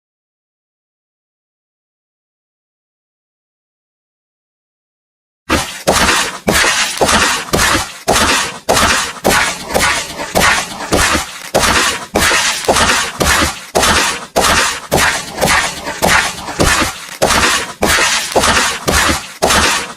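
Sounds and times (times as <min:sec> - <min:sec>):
glass smashing sound effect: 0:05.5 - 0:19.9.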